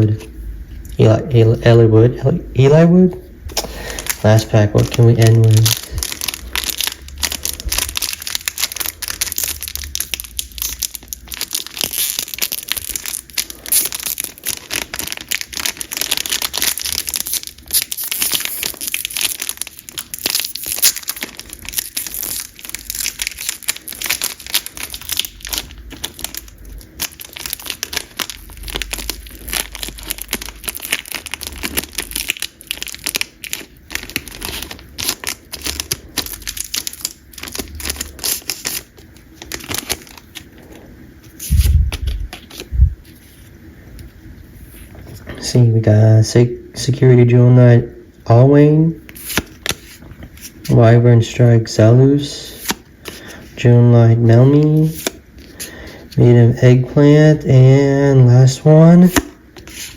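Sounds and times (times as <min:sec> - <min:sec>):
foil wrapper crinkling: 0:03.6 - 0:43.5, 0:49.0 - 0:50.8, 0:59.0 - 0:59.9.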